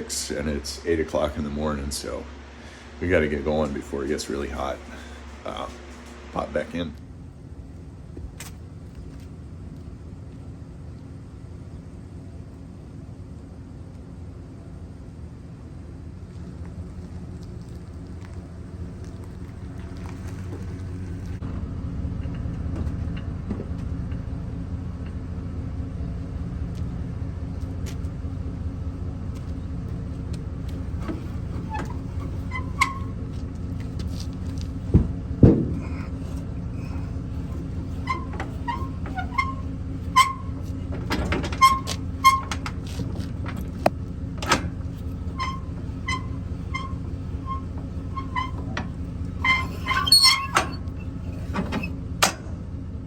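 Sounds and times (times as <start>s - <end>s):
vehicle towing trailer: 0.0s - 53.0s
short squeaks: 30.7s - 52.4s
knocks and rattles: 30.7s - 52.5s.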